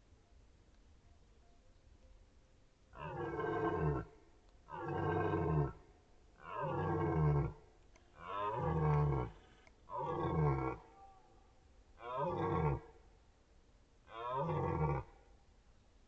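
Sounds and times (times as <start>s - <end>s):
deer stag roaring: 3.0s - 4.1s, 4.7s - 5.8s, 6.4s - 7.6s, 8.2s - 11.2s, 12.0s - 12.9s, 14.1s - 15.1s.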